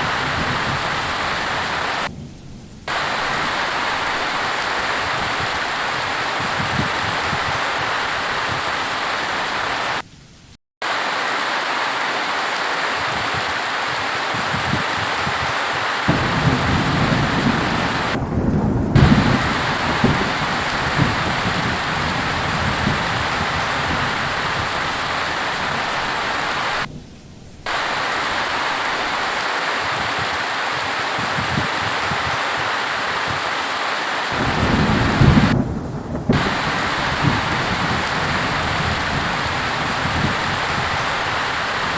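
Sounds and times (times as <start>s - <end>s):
low rumble of thunder: 0.0s - 8.7s, 14.3s - 29.3s, 34.3s - 41.9s
heavy rain: 0.0s - 41.9s.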